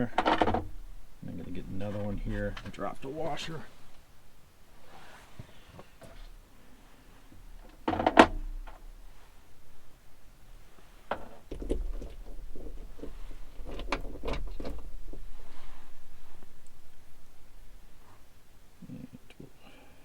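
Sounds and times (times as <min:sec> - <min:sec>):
tools knocking and clattering: 0:00.0 - 0:00.9, 0:11.1 - 0:15.4
irregular clicks and knocks: 0:00.0 - 0:03.1, 0:07.3 - 0:08.9, 0:11.1 - 0:17.4.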